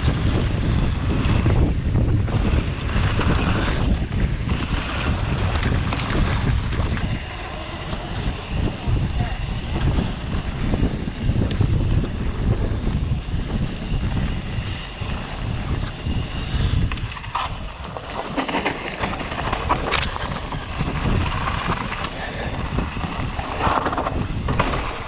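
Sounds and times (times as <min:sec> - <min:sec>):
bike rattling over rough ground: 0:00.0 - 0:25.0
wind buffeting microphone: 0:00.0 - 0:25.0.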